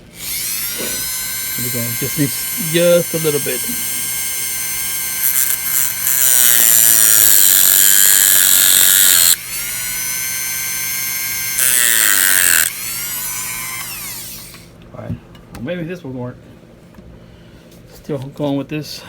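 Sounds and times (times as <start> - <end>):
power tool whining: 0.0 - 14.8.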